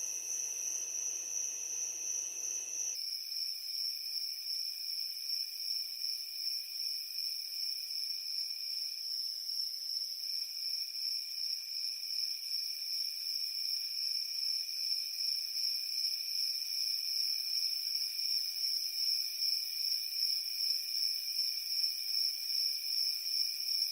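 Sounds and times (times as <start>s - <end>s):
insects trilling: 0.0s - 3.0s.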